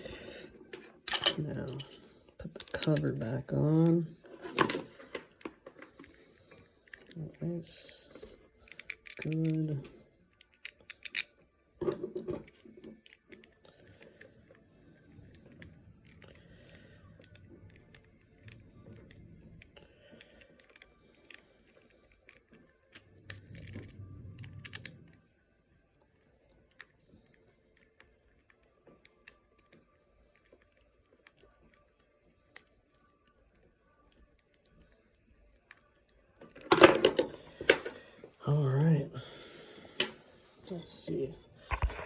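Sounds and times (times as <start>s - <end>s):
parts clattering: 0.7s - 3.0s, 36.5s - 38.0s
small parts clicking and tapping: 0.7s - 7.4s, 8.1s - 25.2s, 26.1s - 38.0s.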